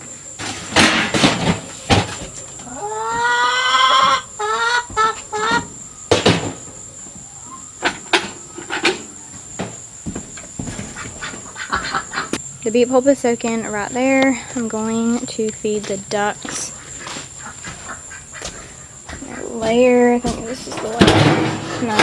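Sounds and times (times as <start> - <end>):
animal calling: 2.2 - 9.5, 10.8 - 12.8, 15.8 - 22.0
knocks and clatter: 19.6 - 22.0.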